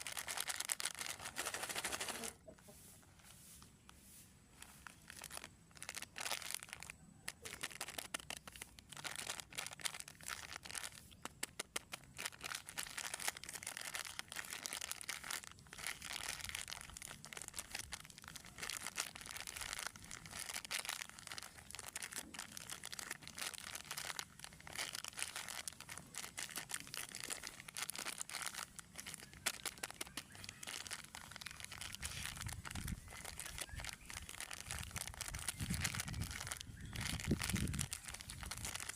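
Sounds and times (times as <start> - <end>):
plastic wrappers crinkling: 0.0 - 2.4, 4.5 - 38.9.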